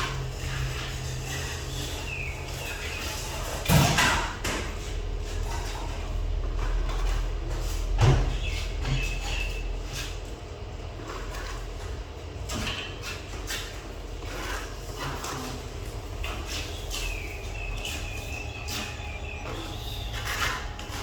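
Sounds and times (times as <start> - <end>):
steady low hum: 0.0 - 21.0
metal scraping and knocking: 11.0 - 21.0
thin high squeal: 16.4 - 21.0.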